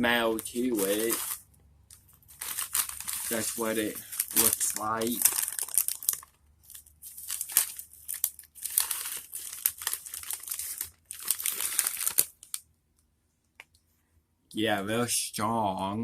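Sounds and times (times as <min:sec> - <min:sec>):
snack bag crinkling: 0:00.2 - 0:12.6.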